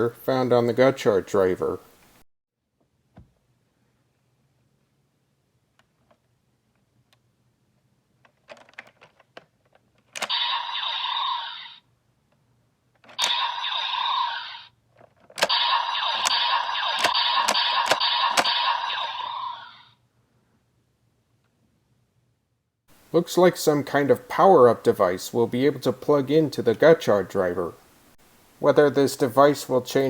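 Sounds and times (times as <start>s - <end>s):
toy belt electronic sound effects: 10.2s - 11.8s, 13.2s - 14.7s, 15.4s - 19.9s.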